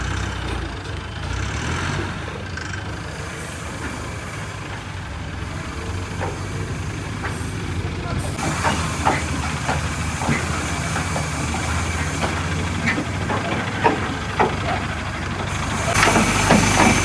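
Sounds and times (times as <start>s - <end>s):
low engine rumble: 0.0s - 17.0s.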